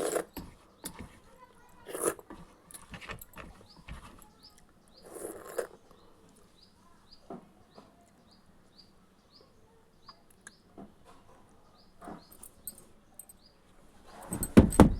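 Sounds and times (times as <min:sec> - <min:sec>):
small bird chirping: 0:03.4 - 0:10.7.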